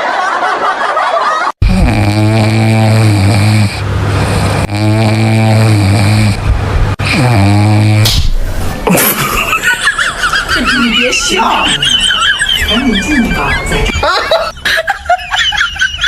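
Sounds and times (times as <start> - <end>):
man snoring: 1.6 - 8.1.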